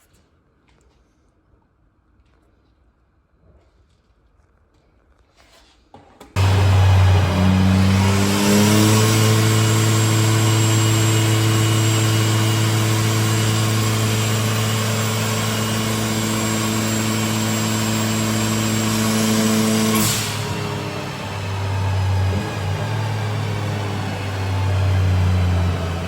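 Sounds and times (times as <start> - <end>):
turbocharged car engine running: 6.4 - 26.0.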